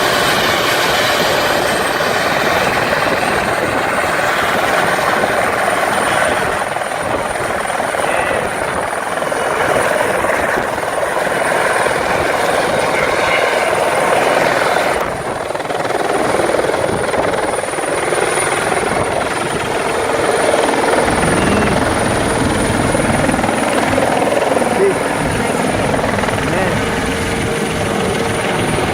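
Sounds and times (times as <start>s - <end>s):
helicopter rotor and engine: 0.0s - 28.9s
high constant whine: 18.4s - 28.9s.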